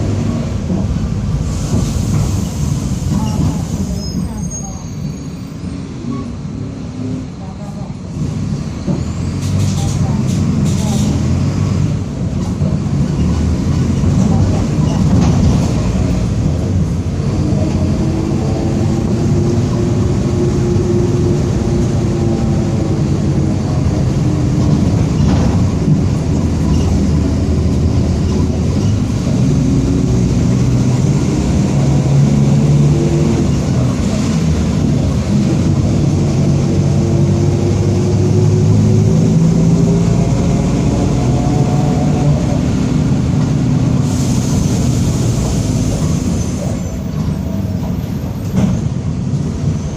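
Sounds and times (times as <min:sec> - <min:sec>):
bus engine rumble: 0:00.0 - 0:49.9.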